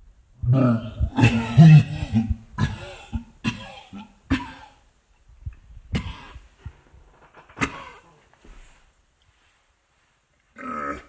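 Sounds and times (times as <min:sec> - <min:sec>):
person coughing and gagging: 0:00.4 - 0:04.8, 0:05.9 - 0:06.5, 0:07.5 - 0:08.2.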